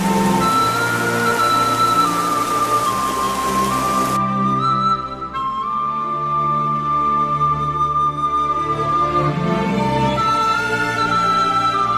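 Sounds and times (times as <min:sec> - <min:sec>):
rain hissing: 0:00.0 - 0:04.2
slow flute-like melody: 0:00.0 - 0:11.9.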